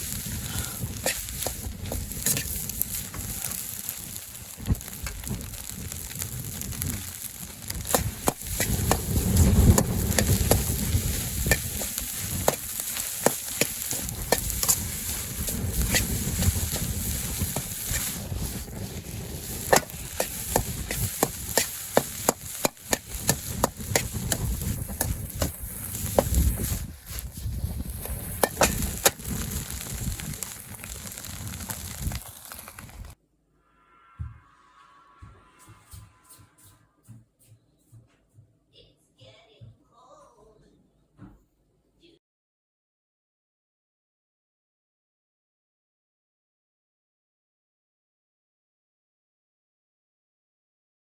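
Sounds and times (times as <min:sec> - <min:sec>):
rice sizzling in a wok: 0:00.0 - 0:33.2
utensil scraping and clacking wok: 0:00.0 - 0:33.2.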